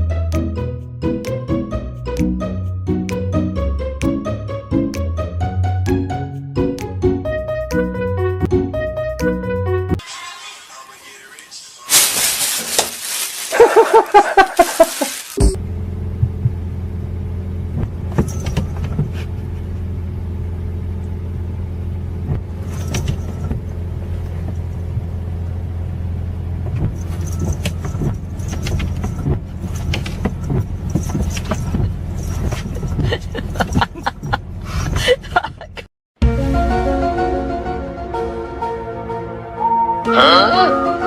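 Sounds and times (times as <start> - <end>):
vehicle engine humming: 11.2 - 39.3
light clicks and rattles: 26.7 - 35.0.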